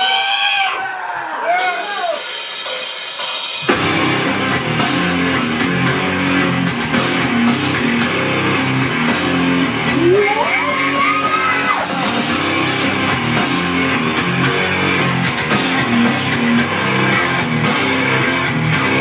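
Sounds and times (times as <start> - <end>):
rock song: 1.6 - 19.0.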